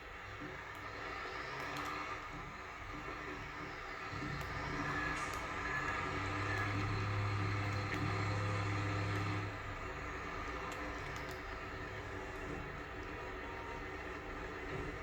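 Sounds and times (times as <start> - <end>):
farm machine engine humming: 3.4 - 15.0.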